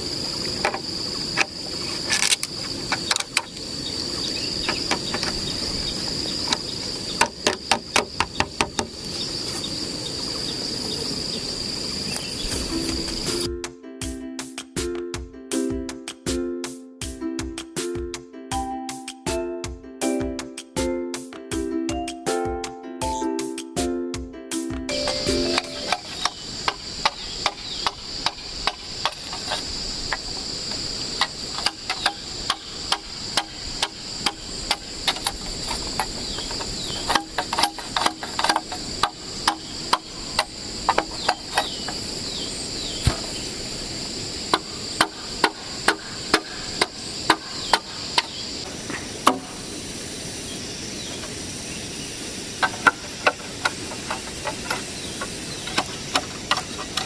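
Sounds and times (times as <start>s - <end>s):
insects droning: 0.0s - 13.6s, 24.5s - 57.0s
hand tool knocking on wood: 7.2s - 9.0s, 25.1s - 30.2s, 31.2s - 42.0s, 44.5s - 48.4s, 52.6s - 57.0s.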